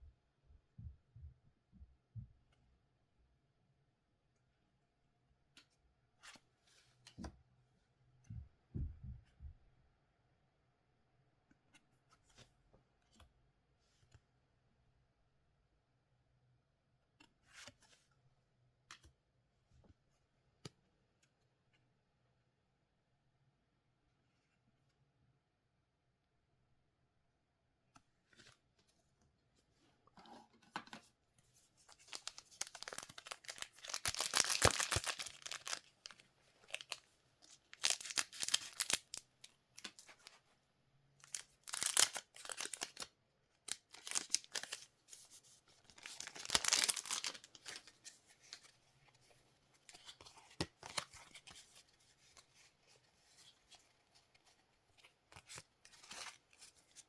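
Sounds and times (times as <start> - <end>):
card wrappers tearing and crinkling: 32.0 - 37.0, 37.7 - 39.2, 41.2 - 43.1, 43.7 - 44.9, 45.9 - 47.9.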